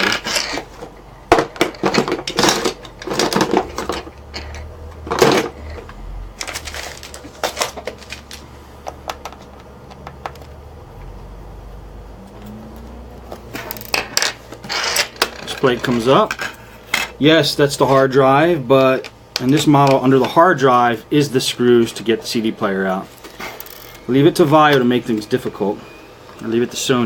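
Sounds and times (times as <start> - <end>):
metal tools clinking and clattering: 0.0 - 0.8, 1.4 - 5.8, 6.4 - 8.4.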